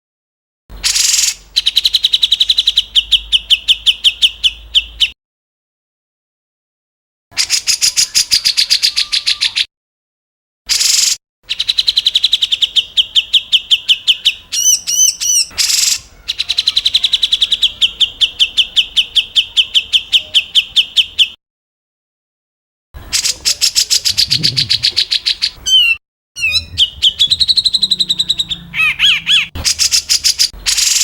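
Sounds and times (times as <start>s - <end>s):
harsh rasping bird calls: 0.7s - 5.2s, 7.3s - 9.7s, 10.7s - 21.4s, 23.0s - 31.0s
whistled bird notes: 0.8s - 5.2s, 7.4s - 9.7s, 10.7s - 21.4s, 23.0s - 31.0s
bird trills of sharp notes: 23.2s - 31.0s.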